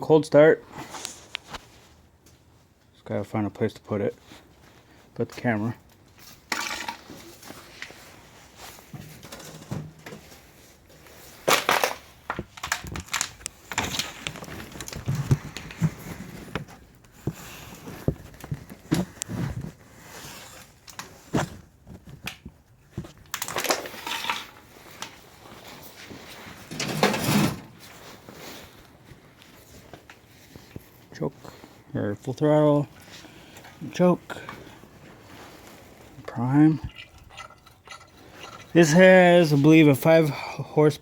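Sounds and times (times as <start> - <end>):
camera handling crunching: 11.4 - 15.8.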